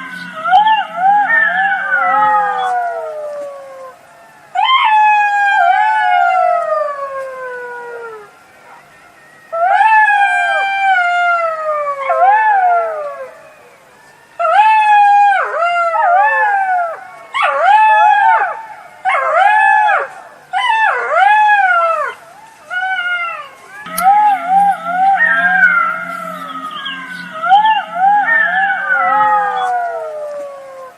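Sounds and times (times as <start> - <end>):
jackal howling: 0.0 - 4.0, 4.6 - 8.3, 9.6 - 13.4, 14.4 - 30.9
low steady hum: 0.0 - 4.5, 23.6 - 30.9.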